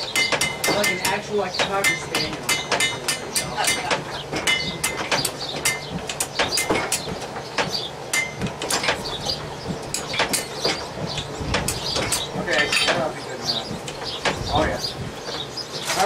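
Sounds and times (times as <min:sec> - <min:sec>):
hammer striking iron on anvil: 0:00.1 - 0:09.0.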